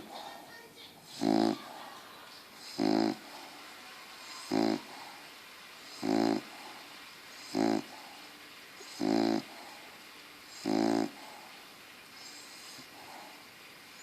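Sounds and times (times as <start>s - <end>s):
dog snoring loudly: 1.1s - 1.8s, 2.6s - 3.5s, 4.2s - 11.5s, 12.2s - 13.4s
dog breathing quietly: 4.5s - 13.6s.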